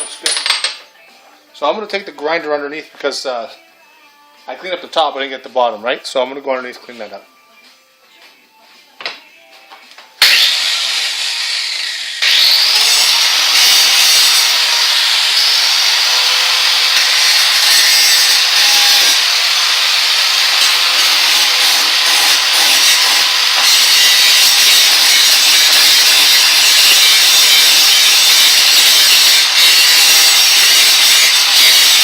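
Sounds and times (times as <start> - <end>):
grinder grinding metal: 10.2 - 32.0.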